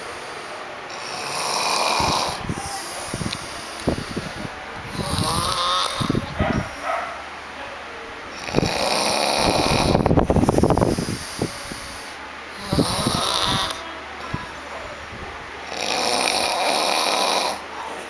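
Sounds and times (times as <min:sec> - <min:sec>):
person snoring: 0:00.9 - 0:06.3, 0:08.4 - 0:10.1, 0:10.9 - 0:13.8, 0:15.7 - 0:17.6.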